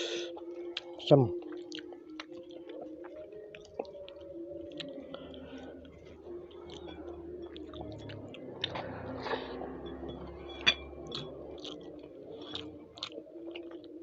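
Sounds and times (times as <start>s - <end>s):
chewing food: 0.0s - 14.0s
low steady hum: 0.0s - 14.0s.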